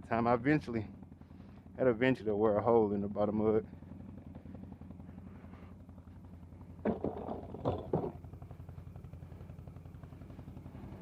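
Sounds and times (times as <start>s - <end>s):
atv engine running at low revs: 0.0s - 11.0s
short clatters: 6.8s - 8.2s.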